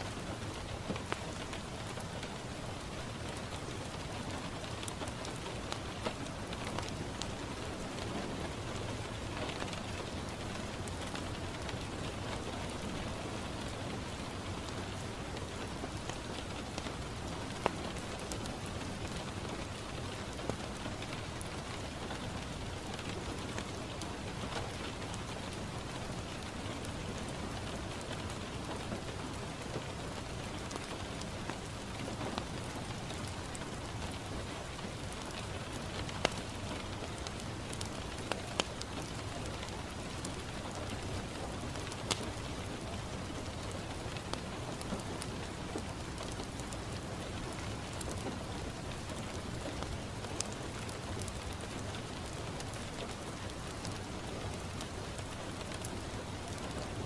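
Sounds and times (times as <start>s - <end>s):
rain falling on a window: 0.0s - 57.0s.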